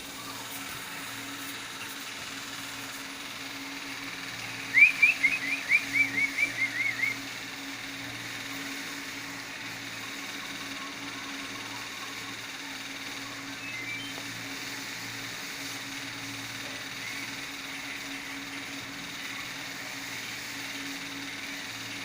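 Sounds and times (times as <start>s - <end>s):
steady low hum: 0.0s - 22.0s
animal high chirps: 4.6s - 7.2s, 13.6s - 14.2s.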